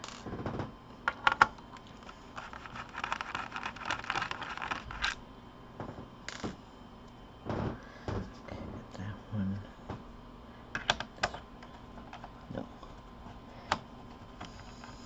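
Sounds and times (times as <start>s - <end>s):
screwdriver scratchy ticking: 2.4s - 5.2s.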